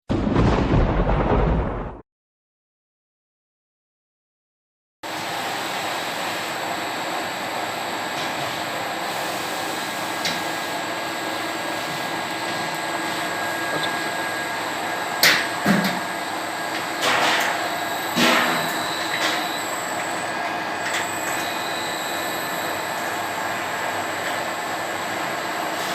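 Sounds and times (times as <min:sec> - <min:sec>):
machine whirring: 0:09.1 - 0:25.9.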